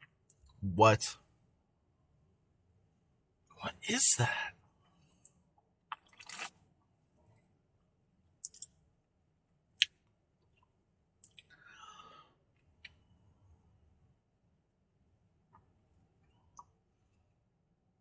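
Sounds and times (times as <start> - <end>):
lip smacks and tongue clicks: 5.9 - 6.6, 10.6 - 11.5.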